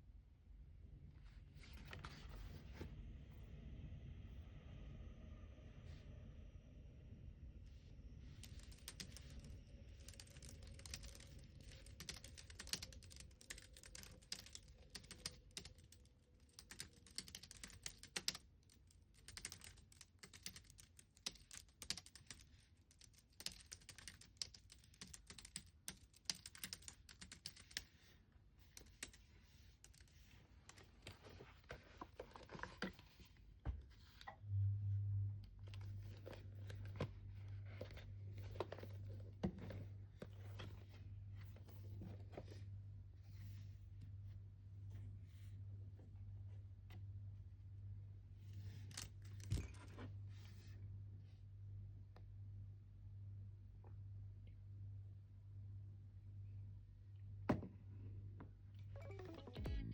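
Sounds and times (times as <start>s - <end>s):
typing on computer keyboard: 8.4s - 27.9s, 28.7s - 29.2s, 29.8s - 30.1s
low buzz: 34.4s - 35.6s.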